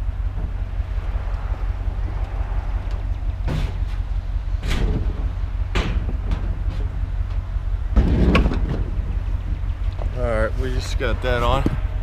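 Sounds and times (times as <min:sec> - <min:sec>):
steady low rumble: 0:00.0 - 0:12.0
scrap metal knocks and clanks: 0:02.8 - 0:11.9.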